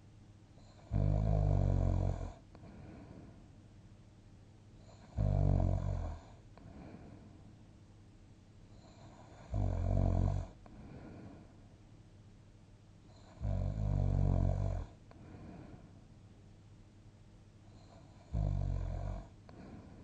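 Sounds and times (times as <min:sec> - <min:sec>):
long low snores: 0:00.6 - 0:03.4, 0:04.8 - 0:07.2, 0:08.7 - 0:11.5, 0:13.1 - 0:15.9, 0:17.7 - 0:20.0
soft breath: 0:02.5 - 0:03.6, 0:06.3 - 0:07.7, 0:10.5 - 0:11.8, 0:15.0 - 0:16.1, 0:19.4 - 0:20.0.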